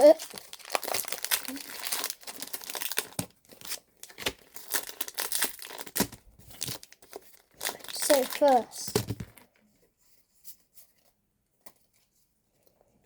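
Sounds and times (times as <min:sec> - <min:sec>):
wrapper crinkling and tearing: 0:00.0 - 0:09.4.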